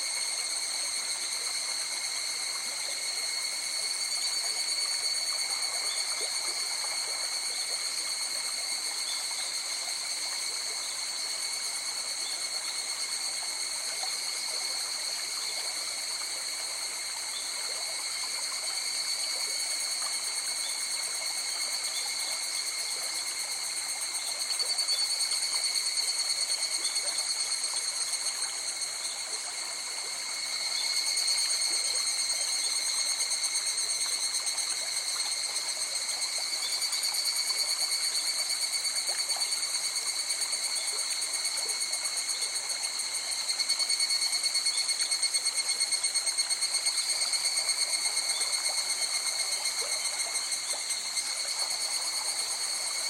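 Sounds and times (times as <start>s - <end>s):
night insects trilling: 0.0s - 53.0s.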